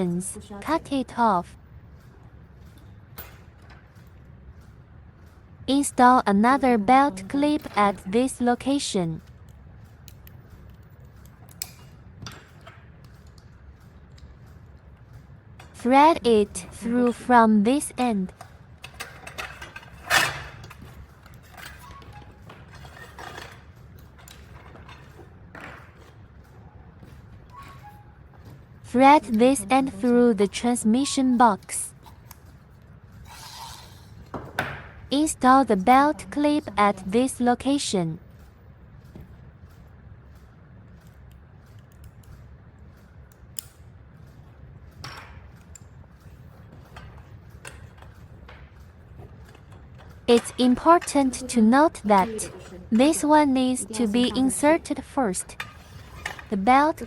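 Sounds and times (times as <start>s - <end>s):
belt scraping and rustling: 55.6s - 56.5s.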